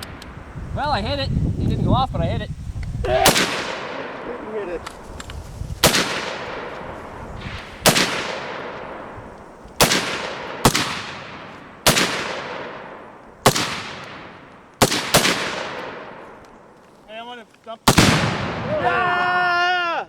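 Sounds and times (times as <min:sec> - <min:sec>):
rifle shots with echo: 0:03.1 - 0:04.8, 0:05.8 - 0:16.8, 0:17.9 - 0:18.8.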